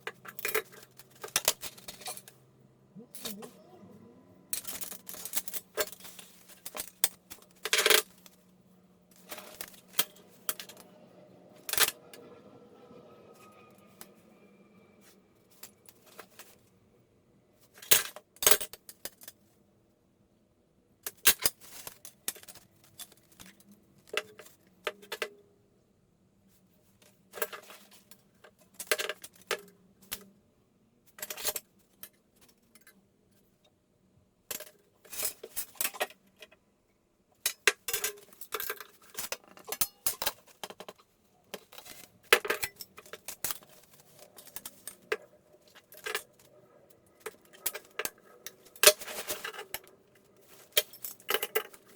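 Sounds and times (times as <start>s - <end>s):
metal tools clinking and rattling: 0.0s - 2.4s, 4.5s - 8.4s, 9.1s - 10.9s, 37.5s - 51.9s.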